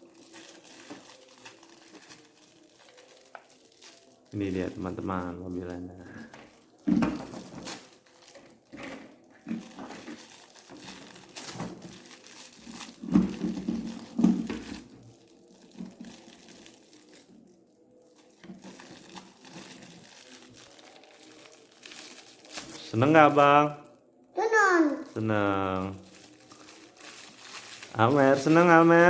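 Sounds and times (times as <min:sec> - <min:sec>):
plastic packaging crinkling: 0:00.0 - 0:29.0.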